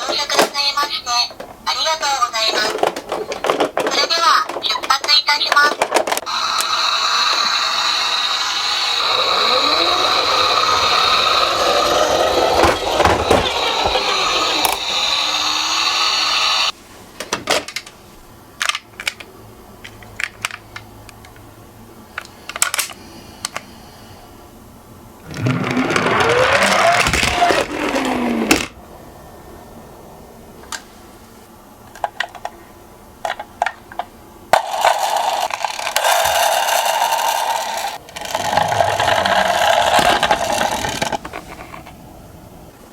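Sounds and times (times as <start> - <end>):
toy cars rattling down a slope: 5.6 - 16.7, 25.2 - 28.7, 34.6 - 41.9.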